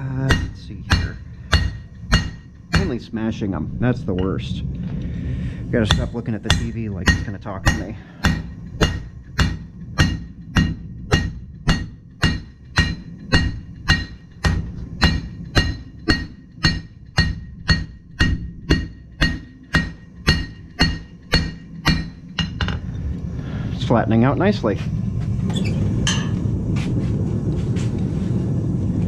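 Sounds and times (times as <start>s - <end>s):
hammer striking metal on anvil: 0.0s - 3.2s, 4.1s - 4.4s, 5.8s - 22.8s, 26.1s - 26.4s.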